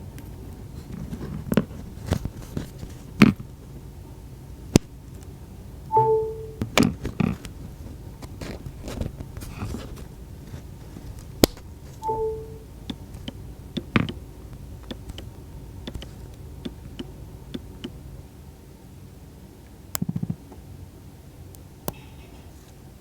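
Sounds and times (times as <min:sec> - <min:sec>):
phone chime: 0:05.9 - 0:06.8, 0:12.0 - 0:12.7.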